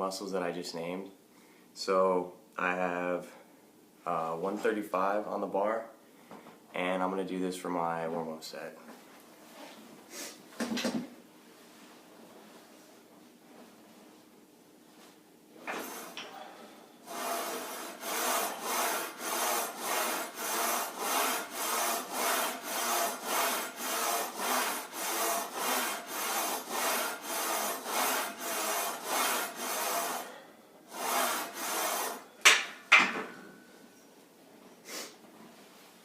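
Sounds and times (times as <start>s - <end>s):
hard rhythmic breathing: 16.2s - 32.3s.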